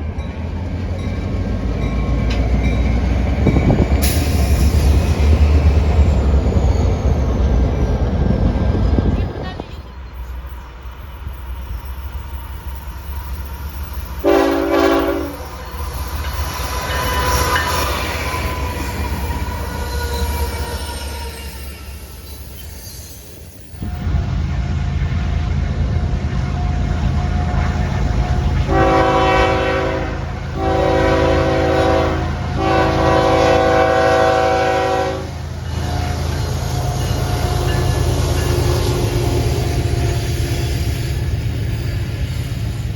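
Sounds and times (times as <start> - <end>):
rail squeal: 0.0 - 29.8, 30.5 - 42.9
passing train rumble: 0.0 - 42.9
locomotive horn blast: 14.2 - 15.5, 28.6 - 37.7.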